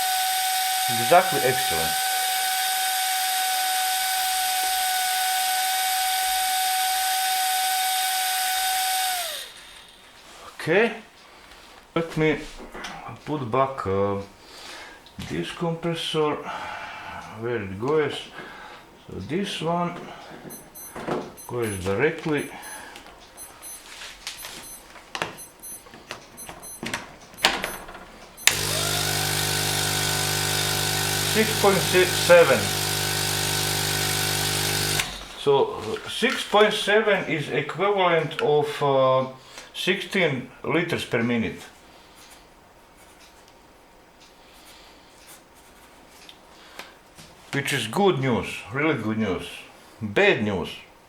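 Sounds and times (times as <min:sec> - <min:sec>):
air compressor motor whine: 0:00.0 - 0:10.2, 0:28.4 - 0:36.0
handling knocks and clicks: 0:24.9 - 0:28.6
air pump switch click: 0:28.4 - 0:35.4.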